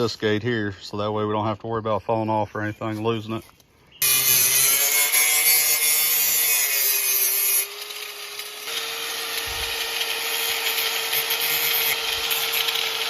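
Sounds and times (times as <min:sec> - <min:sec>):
grinder grinding metal chain: 0:04.0 - 0:13.0
grinder motor whining: 0:04.0 - 0:13.0.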